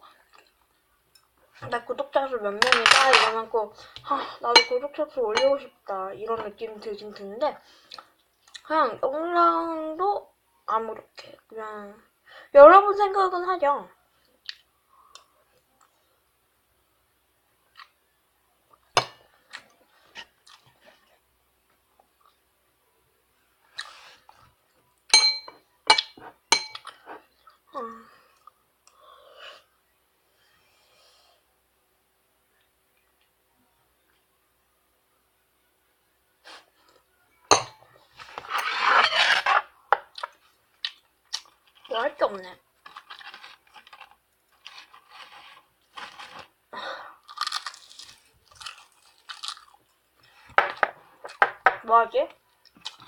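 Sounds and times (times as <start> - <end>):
utensils clinking against dishes: 4.6 - 4.8, 25.1 - 26.9
rough rubbing scrape: 38.2 - 39.7, 44.7 - 46.4.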